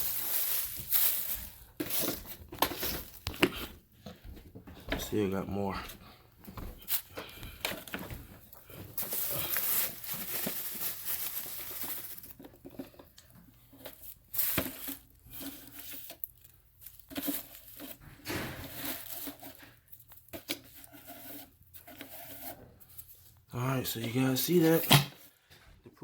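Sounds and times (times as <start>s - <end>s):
dust bags rustling and crinkling: 0.0s - 3.8s, 6.5s - 13.2s, 13.8s - 25.5s.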